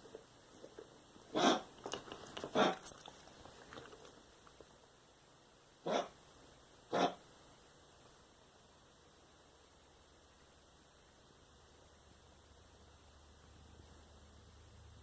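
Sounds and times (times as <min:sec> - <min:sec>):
dog making short loud noises: 0:01.3 - 0:01.7, 0:02.5 - 0:02.8, 0:05.9 - 0:06.2, 0:06.9 - 0:07.2.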